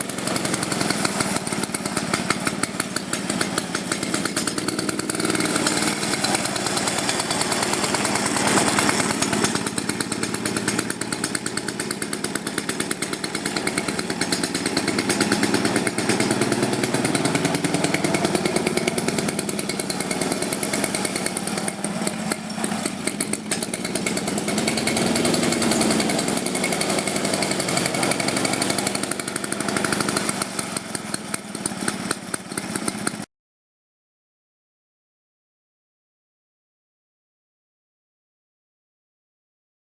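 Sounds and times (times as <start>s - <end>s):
lawnmower engine running: 0.0s - 33.3s.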